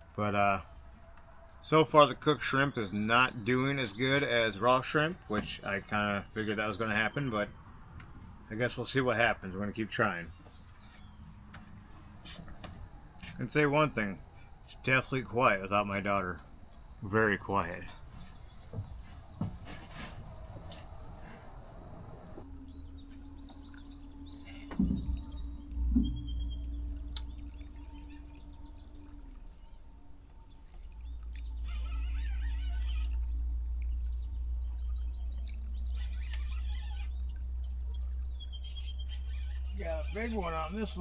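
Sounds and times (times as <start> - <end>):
crickets trilling: 0.0 - 41.0
low rumble: 21.7 - 31.7.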